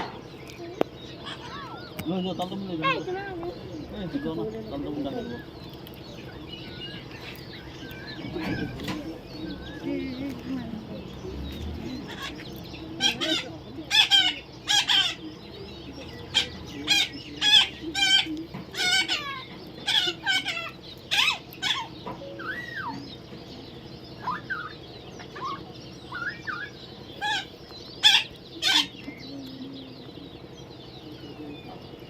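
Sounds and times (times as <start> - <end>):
parrot squawking: 1.1 - 2.0, 12.0 - 15.3, 16.2 - 23.0, 24.2 - 29.1.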